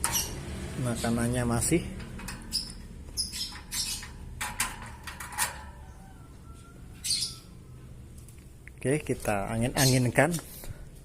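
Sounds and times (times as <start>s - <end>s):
bird cage clicks and rattles: 1.9s - 5.8s.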